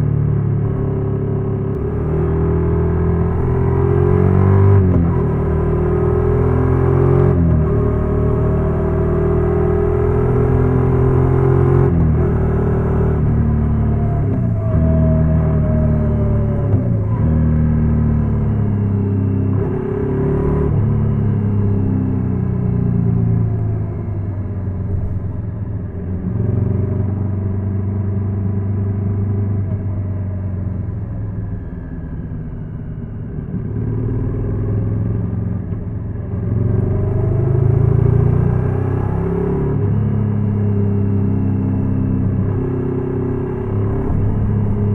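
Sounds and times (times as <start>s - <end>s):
motorcycle engine revving: 33.6s - 44.9s.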